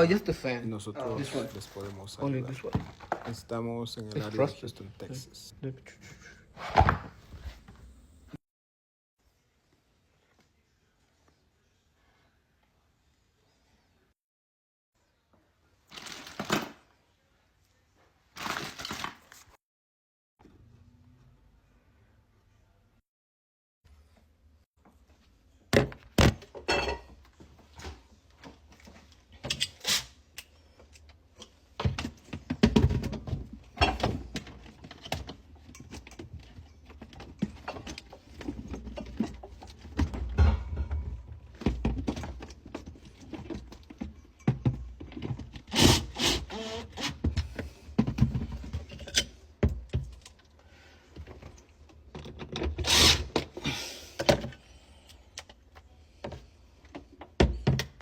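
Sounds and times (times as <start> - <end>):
thunks knocks and clattering: 37.0 - 45.5
low rumbling handling noise: 40.2 - 41.6.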